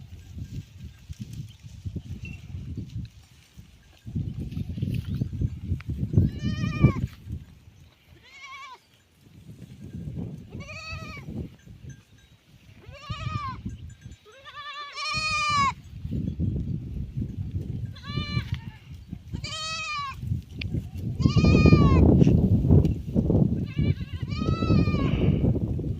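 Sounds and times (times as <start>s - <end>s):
goats bleating: 6.2s - 7.2s, 8.0s - 8.9s, 10.5s - 11.3s, 12.8s - 13.6s, 14.2s - 15.8s, 17.9s - 20.2s, 23.6s - 25.4s.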